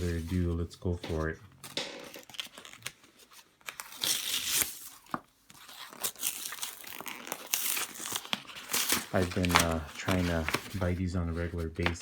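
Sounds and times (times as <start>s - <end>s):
packaging crinkling: 1.6s - 11.0s.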